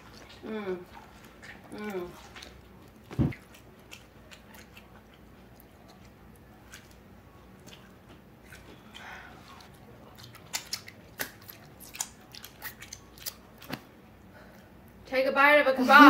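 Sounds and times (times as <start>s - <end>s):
chewing and biting: 0.0s - 13.9s
wet mouth clicks: 10.2s - 13.8s.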